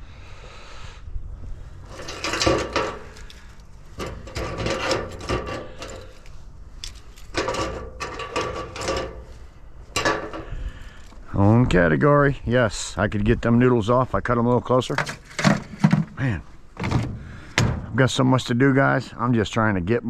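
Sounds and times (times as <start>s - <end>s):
rasping metal cutting: 4.0s - 6.2s.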